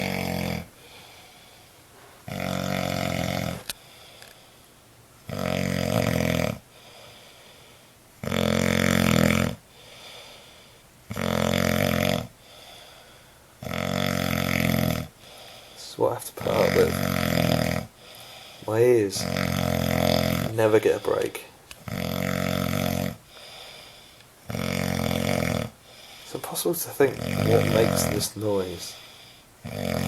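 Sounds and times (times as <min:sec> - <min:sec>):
man snoring: 0:00.0 - 0:01.2, 0:02.3 - 0:03.7, 0:05.3 - 0:06.7, 0:08.2 - 0:10.2, 0:11.1 - 0:13.0, 0:13.6 - 0:30.0
faint breathing: 0:00.7 - 0:02.3, 0:03.4 - 0:04.8, 0:06.7 - 0:08.0, 0:09.7 - 0:10.9, 0:12.4 - 0:13.6, 0:15.1 - 0:16.9, 0:17.9 - 0:19.2, 0:19.9 - 0:21.7, 0:23.2 - 0:24.4, 0:25.8 - 0:29.6.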